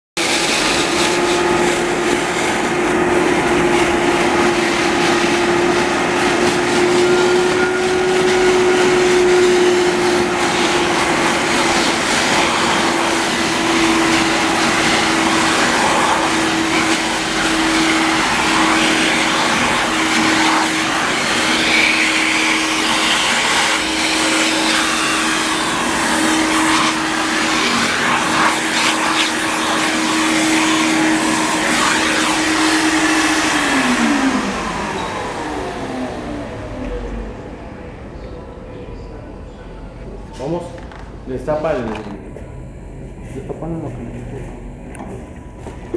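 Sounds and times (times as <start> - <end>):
wet dry vacuum running: 0.2 - 38.6, 39.4 - 45.9.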